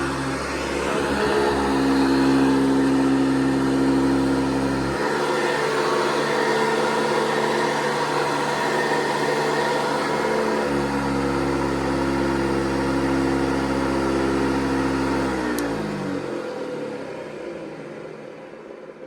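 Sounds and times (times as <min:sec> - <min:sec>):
vacuum cleaner motor hum: 0:00.0 - 0:19.0.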